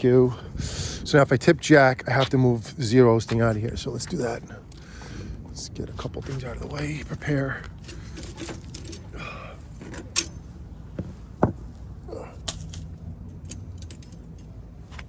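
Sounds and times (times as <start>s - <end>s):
objects knocking and clacking: 11.0s - 11.7s.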